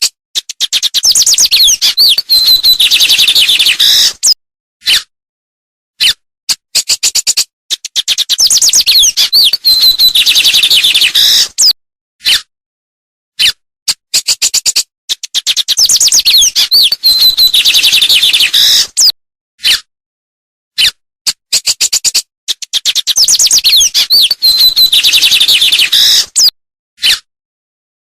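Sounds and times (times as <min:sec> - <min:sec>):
songbird singing: 0:00.9 - 0:04.1, 0:08.1 - 0:11.5, 0:15.6 - 0:18.9, 0:22.9 - 0:26.5.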